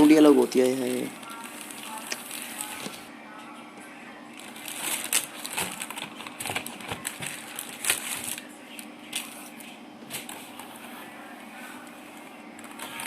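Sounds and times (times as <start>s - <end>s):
plastic film crinkling: 0.0s - 3.1s, 4.3s - 11.2s.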